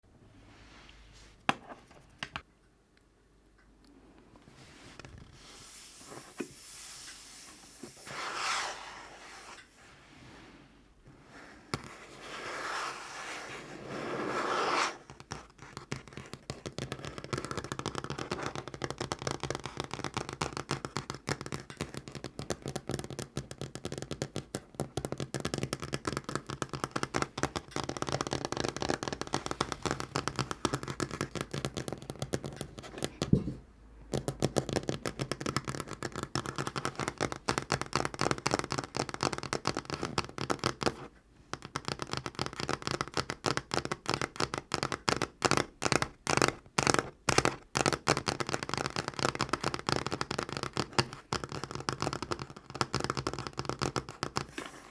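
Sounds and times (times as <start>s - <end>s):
fingernails scraping tabletop: 4.9s - 9.7s, 11.3s - 15.0s, 54.5s - 54.9s.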